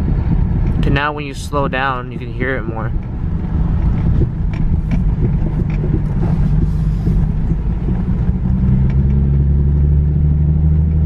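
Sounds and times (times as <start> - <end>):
thumping from car wheel: 0.0 - 9.8
car road and exhaust rumble: 0.0 - 11.0.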